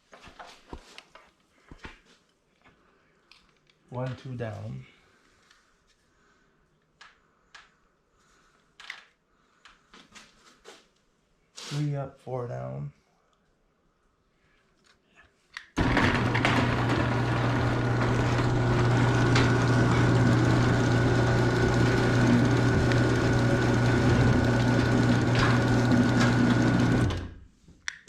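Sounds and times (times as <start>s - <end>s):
motor humming: 15.8s - 27.4s.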